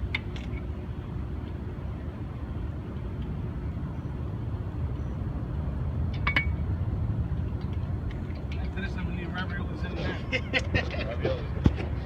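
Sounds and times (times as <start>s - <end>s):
road traffic rumble: 0.0s - 12.0s.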